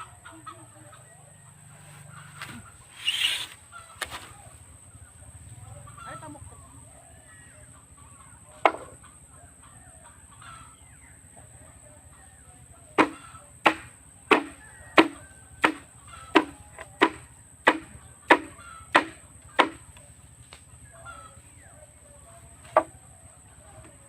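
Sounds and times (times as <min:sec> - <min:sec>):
faint chirping calls: 0:00.0 - 0:24.0
chopping strikes ringing: 0:13.0 - 0:19.8.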